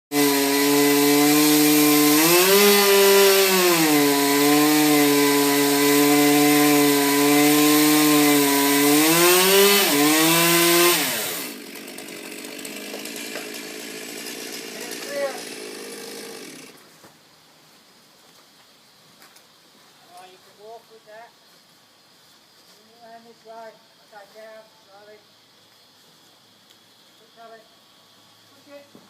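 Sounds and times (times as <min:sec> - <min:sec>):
chainsaw running at high revs: 0:00.1 - 0:16.8.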